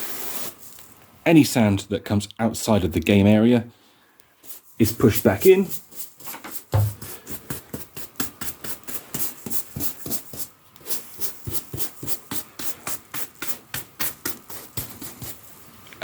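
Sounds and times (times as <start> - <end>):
hand brush sweeping sand on carpet: 0.0 - 0.8, 4.4 - 15.6.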